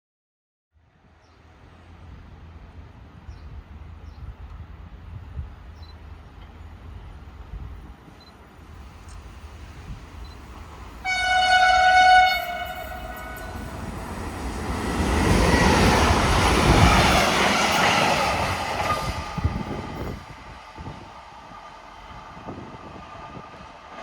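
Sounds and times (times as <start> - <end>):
train wheels rumbling on rail: 1.6 - 24.0
train horn: 11.0 - 13.8.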